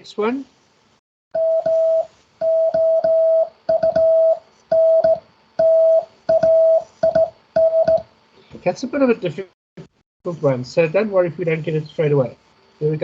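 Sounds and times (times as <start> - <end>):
morse code beeps: 1.4 - 8.1.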